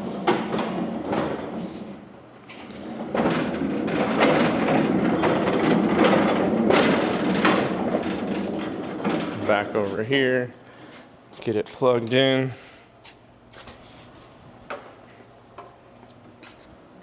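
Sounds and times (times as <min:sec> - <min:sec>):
wheeled cart rattling across floor: 0:02.6 - 0:10.1.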